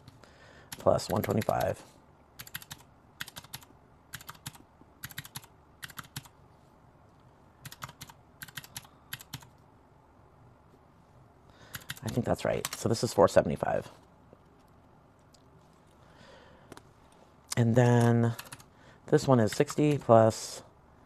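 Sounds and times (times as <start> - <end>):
calculator keys tapping: 0.7 - 1.8, 2.4 - 6.3, 7.6 - 9.5, 11.7 - 12.8.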